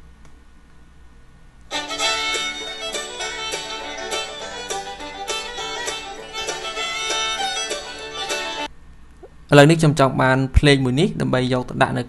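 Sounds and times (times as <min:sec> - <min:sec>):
upbeat bluegrass music: 0:01.7 - 0:08.7.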